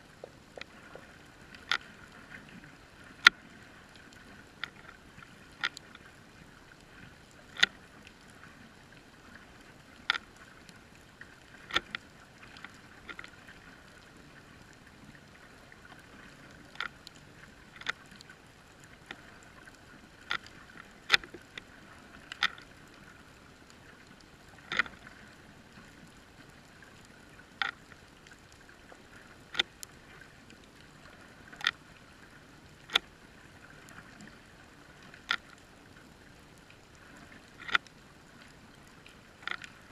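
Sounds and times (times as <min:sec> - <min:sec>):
sharp underwater clicks: 0:00.1 - 0:02.6, 0:03.2 - 0:06.1, 0:06.8 - 0:08.1, 0:10.0 - 0:13.5, 0:15.8 - 0:23.1, 0:24.0 - 0:25.9, 0:27.5 - 0:28.4, 0:29.5 - 0:31.8, 0:32.7 - 0:33.1, 0:35.0 - 0:35.6, 0:37.1 - 0:39.9.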